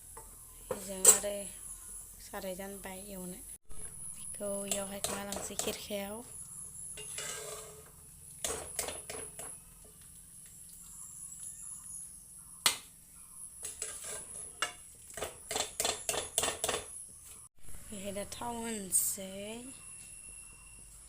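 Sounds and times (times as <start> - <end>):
metal spoon scraping a pan: 7.0 - 9.5, 13.6 - 16.9.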